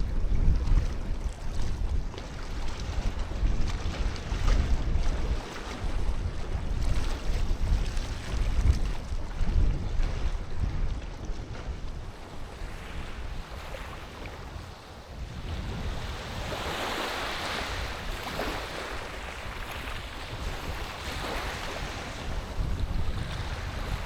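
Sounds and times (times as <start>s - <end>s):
wind rumbling on microphone: 0.0s - 24.0s
sea waves washing in: 11.8s - 24.0s.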